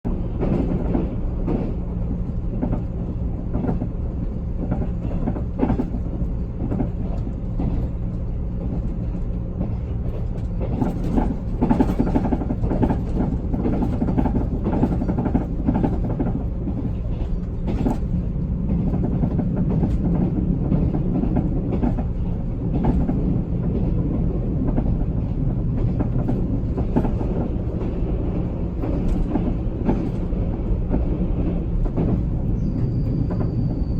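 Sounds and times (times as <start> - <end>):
train wheels rumbling: 0.1 - 33.9
knocks and clatter: 8.6 - 24.0, 24.6 - 32.3.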